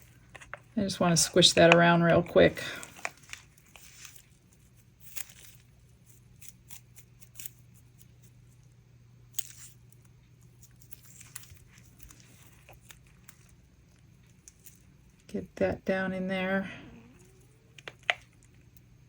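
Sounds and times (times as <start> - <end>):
clicks and rustles of handling mold: 0.0 - 5.7
low steady hum: 0.0 - 19.0.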